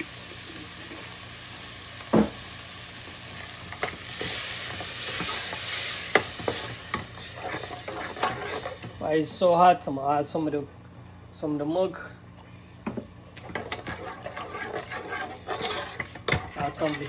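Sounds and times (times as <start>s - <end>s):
meat sizzling in a frying pan: 0.0s - 9.4s.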